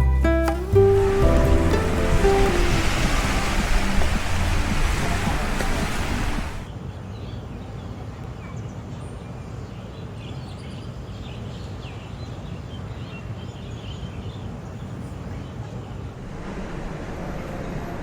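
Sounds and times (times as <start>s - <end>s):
low outdoor rumble: 0.0s - 6.7s, 16.1s - 18.0s
birds chirping: 0.8s - 6.7s.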